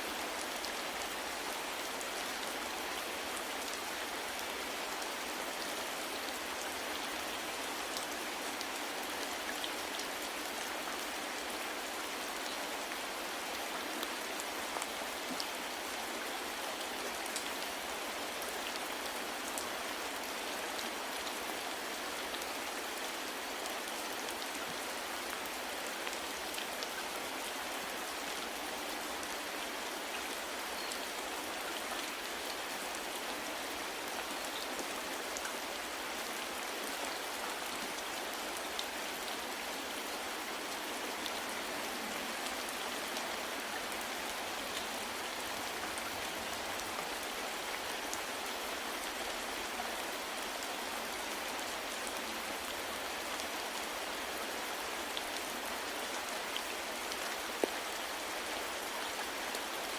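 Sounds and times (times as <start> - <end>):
rain falling: 0.0 - 59.9.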